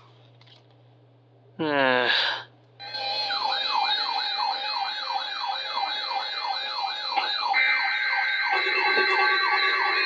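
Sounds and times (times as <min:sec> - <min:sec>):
electronic alert siren wailing: 0:02.8 - 0:10.0
steady high tone: 0:02.8 - 0:10.0
steady buzz: 0:08.3 - 0:10.0.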